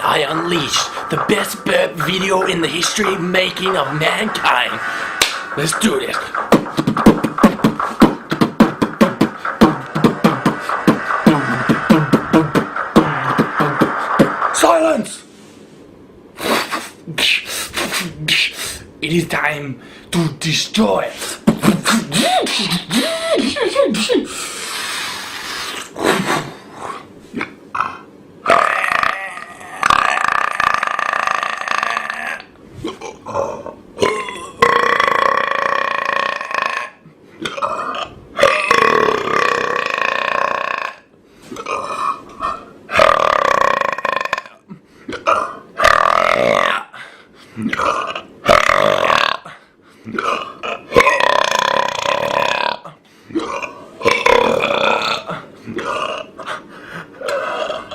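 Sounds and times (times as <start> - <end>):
person belching: 28.5 - 42.2, 42.9 - 44.6, 45.2 - 46.9, 47.6 - 49.5, 50.1 - 56.3.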